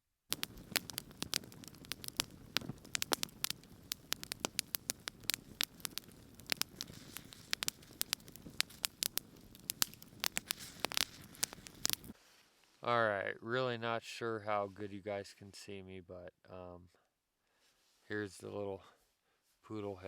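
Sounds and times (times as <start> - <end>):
campfire crackling and popping: 0.3 - 12.2
low rush of burning: 0.3 - 12.2.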